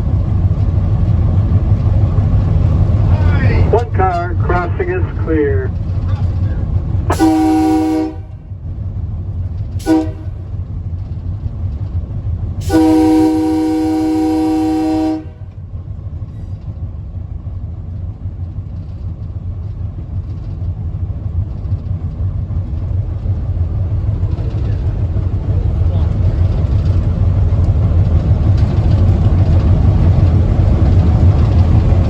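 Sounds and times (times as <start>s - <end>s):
moving train rumble: 0.0s - 32.0s
train horn blasts: 7.1s - 8.4s, 9.8s - 10.5s, 12.6s - 15.6s.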